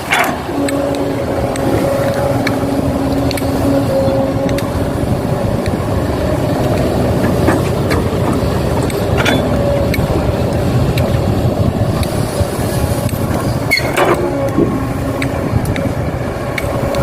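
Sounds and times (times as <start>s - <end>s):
machinery low rumble: 0.0s - 17.0s.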